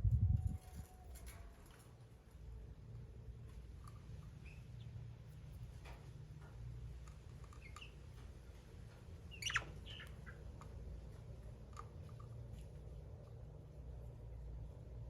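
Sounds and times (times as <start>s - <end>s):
budgies nibbling vegetables: 3.5s - 13.4s.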